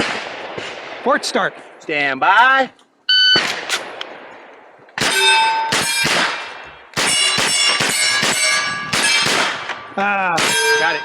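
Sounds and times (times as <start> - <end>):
steel plate ringing clang: 5.0 - 11.0.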